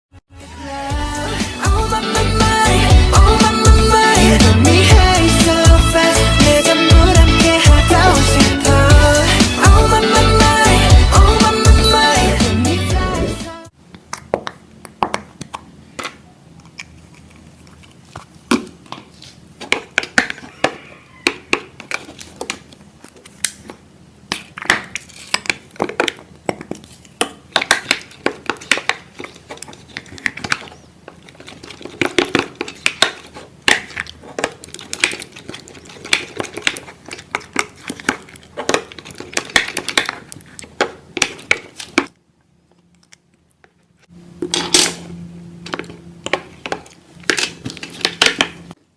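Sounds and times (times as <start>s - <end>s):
slime crinkling and clicking: 21.3s - 42.1s.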